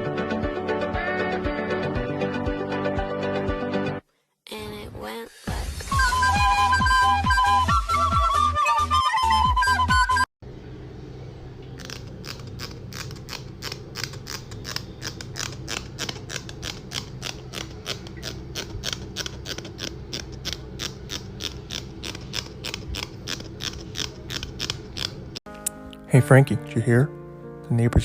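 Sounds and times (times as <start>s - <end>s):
continuous low hum: 10.5s - 25.4s.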